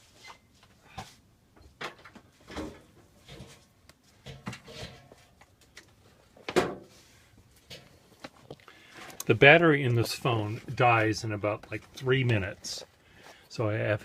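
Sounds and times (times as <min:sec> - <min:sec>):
knocks and clunks of handled objects: 0:00.2 - 0:09.3.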